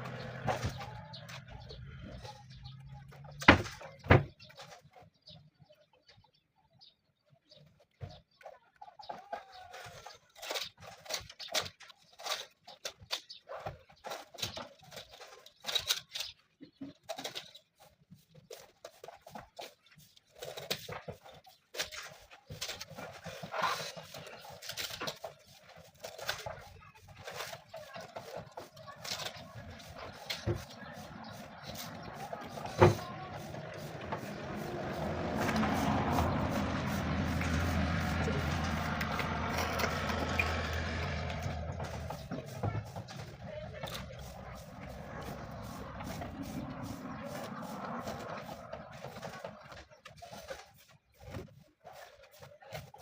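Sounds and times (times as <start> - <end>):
engine running with low hum: 0.0 - 3.5, 22.9 - 49.8.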